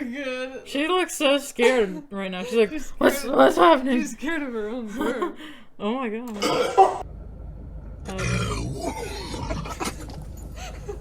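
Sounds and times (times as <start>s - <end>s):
low drawn-out burp: 6.4s - 7.0s, 8.0s - 10.2s.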